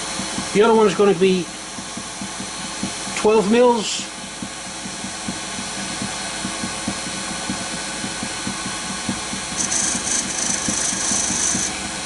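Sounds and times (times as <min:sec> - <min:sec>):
wood lathe running: 0:05.8 - 0:12.0.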